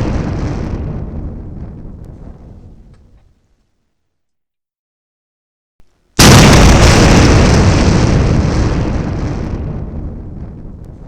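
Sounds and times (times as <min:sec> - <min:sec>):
explosion blast with deep rumble: 0:00.0 - 0:03.3, 0:06.2 - 0:11.0.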